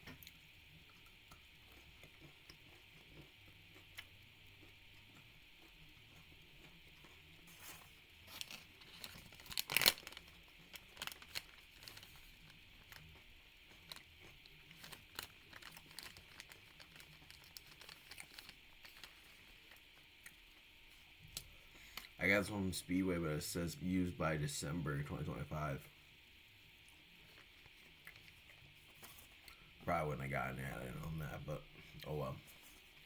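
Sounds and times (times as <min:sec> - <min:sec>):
wrapper crinkling: 0:07.5 - 0:19.8.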